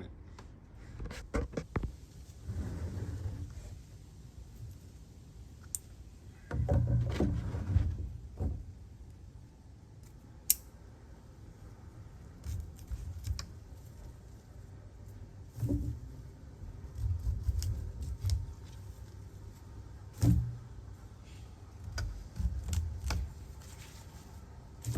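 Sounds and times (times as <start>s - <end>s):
rustling and bumping: 6.4s - 8.8s, 15.1s - 24.9s.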